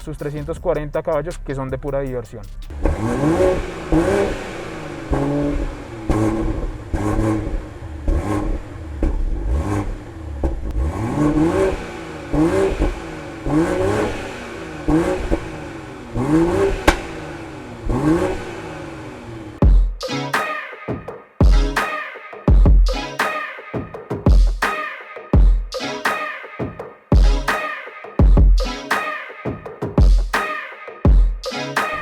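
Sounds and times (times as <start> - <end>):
car engine revving in blips: 2.7 - 19.6
sharp crack: 16.6 - 17.7.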